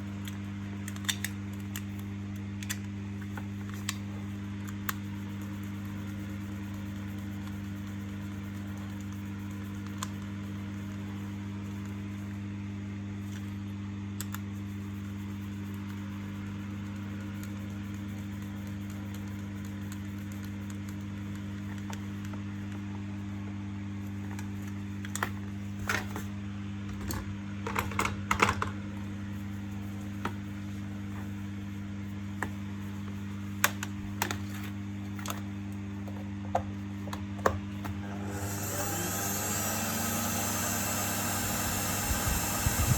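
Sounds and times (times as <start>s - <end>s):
vacuum cleaner motor running: 37.5s - 42.9s.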